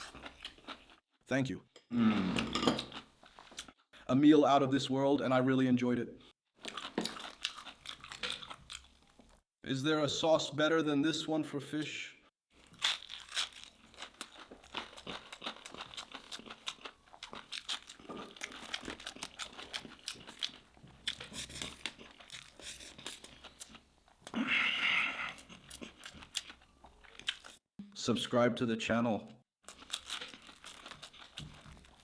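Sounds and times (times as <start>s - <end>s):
crunching and chewing fried fish: 0.0s - 1.1s, 6.5s - 9.4s, 12.5s - 27.6s, 29.6s - 32.0s.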